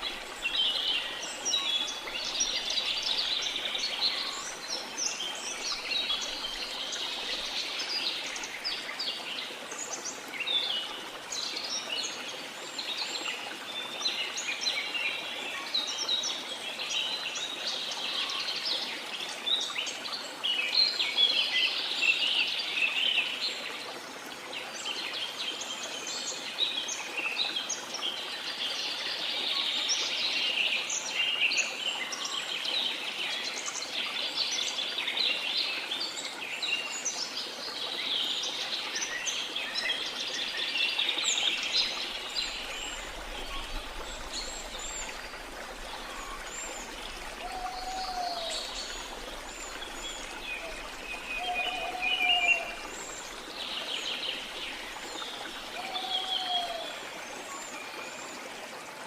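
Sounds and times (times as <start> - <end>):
sea noise: 41.2 - 56.9.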